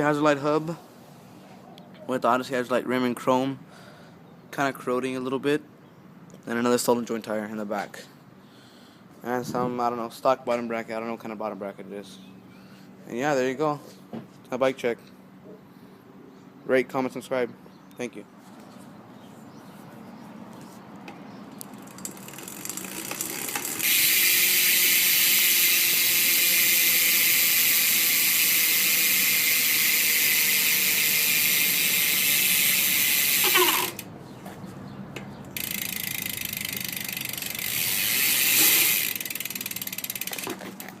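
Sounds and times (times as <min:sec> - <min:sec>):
bike hub ratcheting clicks: 0:21.5 - 0:34.1, 0:35.2 - 0:41.0.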